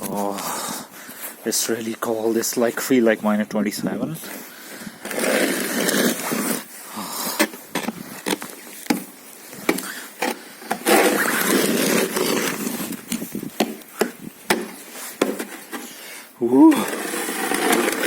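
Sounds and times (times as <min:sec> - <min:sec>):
frozen snow crunching: 0:00.0 - 0:18.0
frozen snow scraping: 0:04.2 - 0:18.0.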